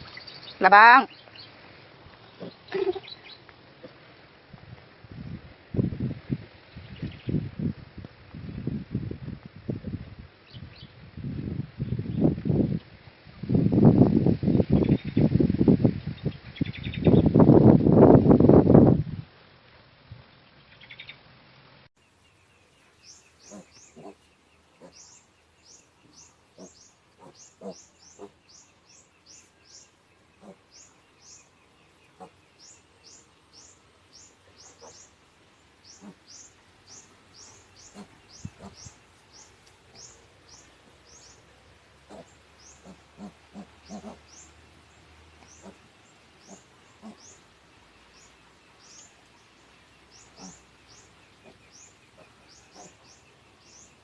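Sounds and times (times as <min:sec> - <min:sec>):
birds chirping: 0:22.0 - 0:54.0
piglets grunting softly: 0:30.4 - 0:30.7, 0:35.9 - 0:36.4, 0:37.8 - 0:38.9, 0:42.1 - 0:44.3, 0:45.5 - 0:47.4.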